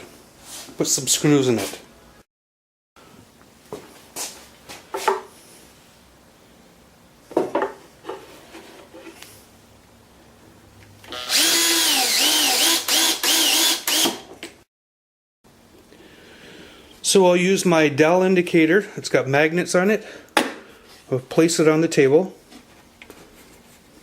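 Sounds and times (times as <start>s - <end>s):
power drill driving screws: 11.1s - 14.3s.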